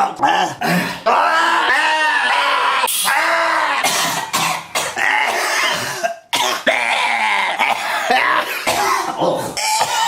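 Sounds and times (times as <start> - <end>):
man coughing hard: 3.8 - 6.9, 7.6 - 10.0.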